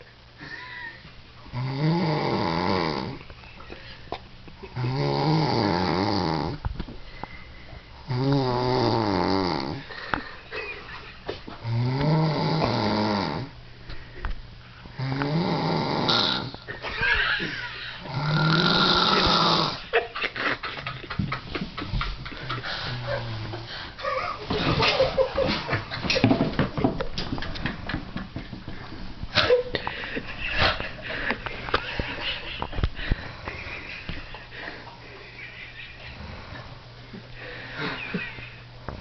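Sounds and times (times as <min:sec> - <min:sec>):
man snoring: 0:01.5 - 0:03.2, 0:04.7 - 0:06.6, 0:08.0 - 0:09.9, 0:11.6 - 0:13.5, 0:15.0 - 0:16.6, 0:18.0 - 0:19.8
quiet breaths: 0:03.1 - 0:04.8, 0:06.5 - 0:08.2, 0:13.7 - 0:15.3, 0:22.4 - 0:24.0, 0:29.8 - 0:39.0.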